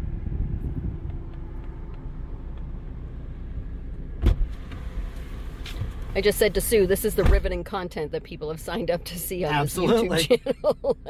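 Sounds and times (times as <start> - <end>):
wind buffeting microphone: 0.0 - 2.2.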